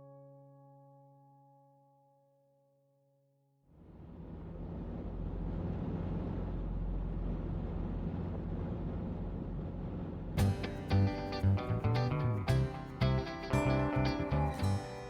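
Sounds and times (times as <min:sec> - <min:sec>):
acoustic guitar music: 0:00.0 - 0:02.6, 0:10.4 - 0:15.0
rushing noise with deep rumble: 0:03.8 - 0:14.8.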